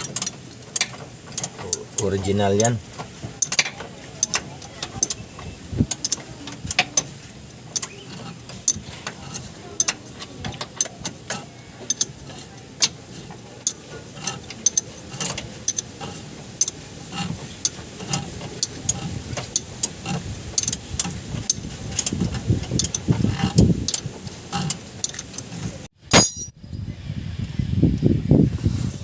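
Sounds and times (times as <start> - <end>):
metallic tool clicks and clinks: 26.1 - 26.6.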